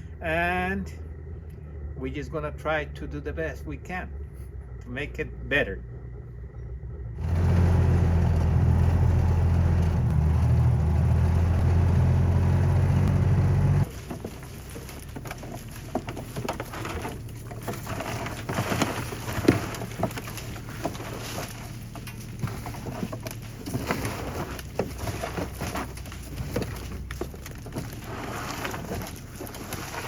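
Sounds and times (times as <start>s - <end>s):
engine running: 0.0s - 30.0s
rustling: 13.8s - 30.0s.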